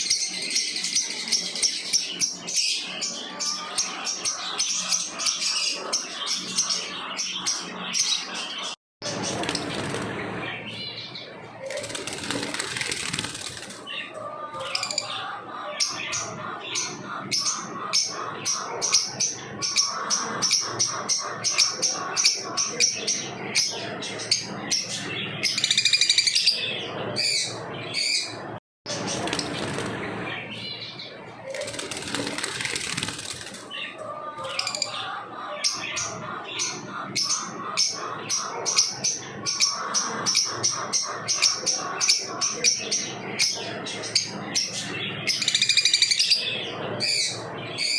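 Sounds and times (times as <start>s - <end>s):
wings flapping: 9.0s - 10.4s, 11.6s - 13.9s, 28.9s - 30.2s, 31.4s - 33.8s.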